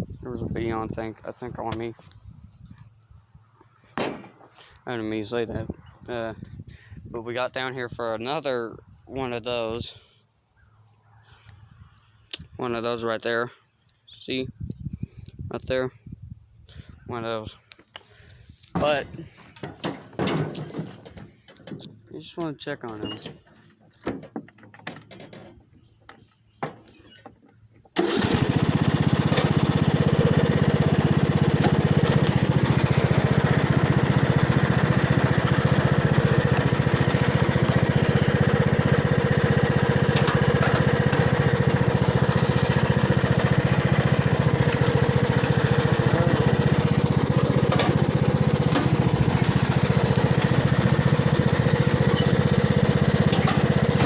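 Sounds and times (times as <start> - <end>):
riding lawnmower engine: 27.9 - 54.0.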